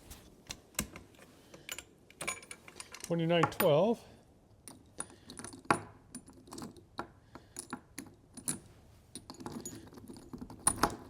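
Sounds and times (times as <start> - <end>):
light clicks and metallic clinks: 4.6 - 11.0.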